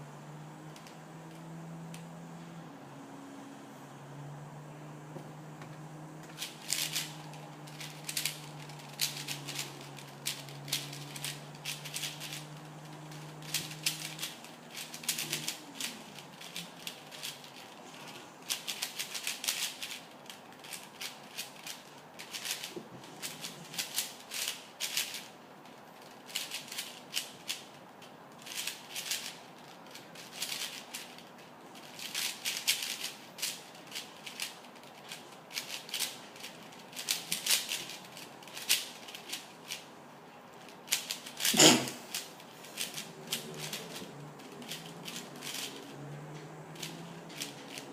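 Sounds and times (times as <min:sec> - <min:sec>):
speedcube plastic clicking: 0:06.3 - 0:17.8, 0:18.5 - 0:27.7, 0:28.4 - 0:39.8, 0:40.6 - 0:45.9.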